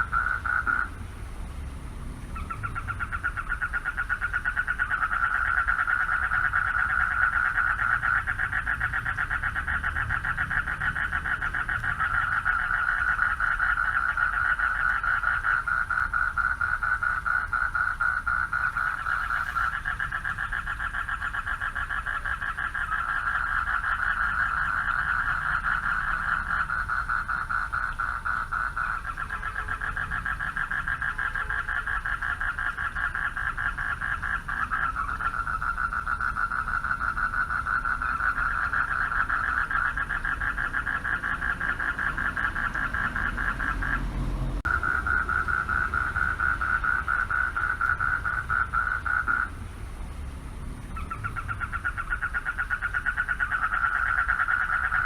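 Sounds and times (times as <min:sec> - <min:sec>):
frogs trilling: 0:00.0 - 0:01.1, 0:02.0 - 0:55.0.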